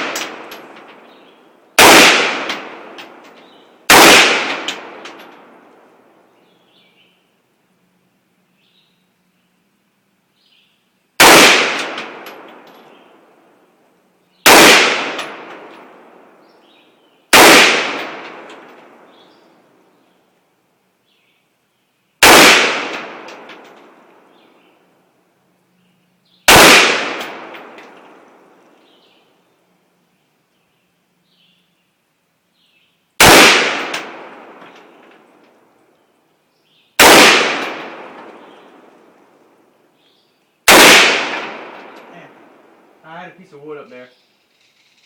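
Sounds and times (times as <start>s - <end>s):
rifle shots with echo: 0.0s - 1.0s, 1.8s - 5.7s, 11.2s - 13.4s, 14.4s - 16.4s, 17.3s - 19.4s, 22.2s - 24.3s, 26.5s - 28.6s, 33.2s - 35.4s, 37.0s - 39.2s, 40.7s - 42.9s.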